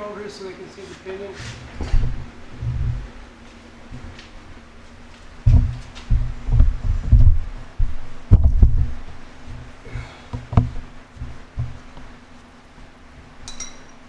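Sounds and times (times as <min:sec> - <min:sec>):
steady low hum: 0:00.0 - 0:14.0
deep dull thuds: 0:01.8 - 0:04.1, 0:05.3 - 0:12.2.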